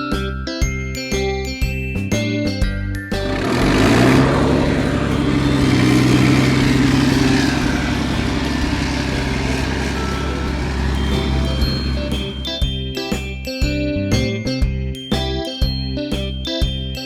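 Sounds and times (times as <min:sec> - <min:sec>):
tractor engine running: 0:03.2 - 0:12.7.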